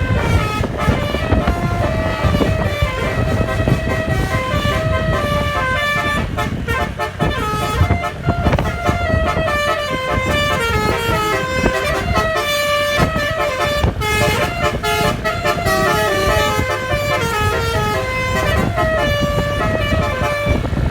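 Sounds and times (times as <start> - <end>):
musical air horn playing a tune: 0.0 - 20.8
low rumble: 8.4 - 20.0.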